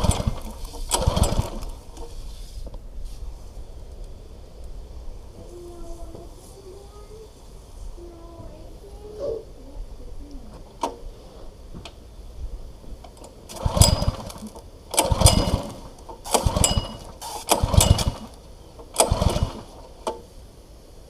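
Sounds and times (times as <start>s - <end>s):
engine whirring turnover: 0.0s - 2.3s, 13.1s - 20.1s
recoil starter pulls: 0.0s - 2.3s, 13.1s - 20.2s.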